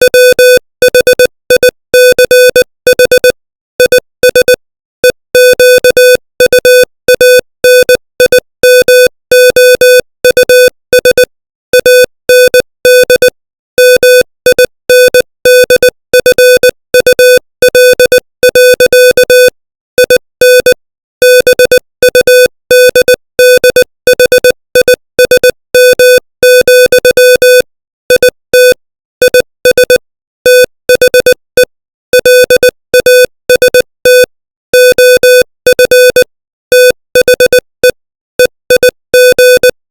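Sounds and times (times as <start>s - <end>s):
morse code beeps: 0.0s - 39.8s.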